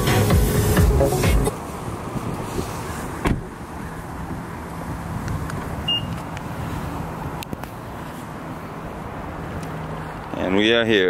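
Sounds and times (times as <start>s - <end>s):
thump: 3.2s - 3.5s
short high beep: 5.9s - 6.2s.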